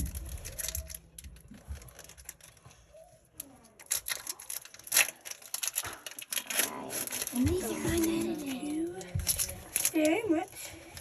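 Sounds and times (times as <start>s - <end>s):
foil wrapper crinkling: 0.0s - 11.0s.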